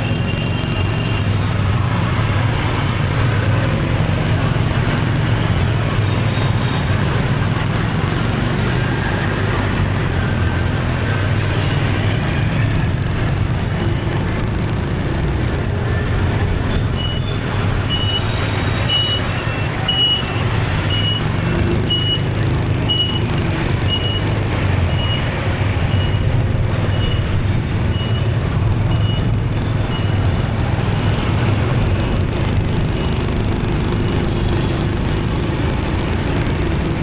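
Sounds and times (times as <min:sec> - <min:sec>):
motorbike engine and road rumble: 0:00.0 - 0:37.0.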